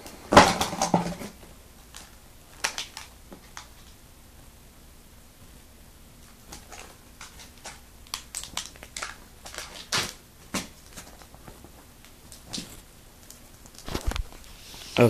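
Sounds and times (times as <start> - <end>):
plastic packaging crinkling: 1.9 - 4.0, 6.4 - 14.6.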